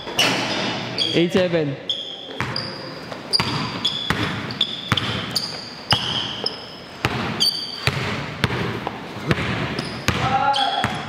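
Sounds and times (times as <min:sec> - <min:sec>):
sneaker squeaks on court: 0:00.0 - 0:08.6, 0:09.3 - 0:11.0
basketball bouncing: 0:02.3 - 0:11.0.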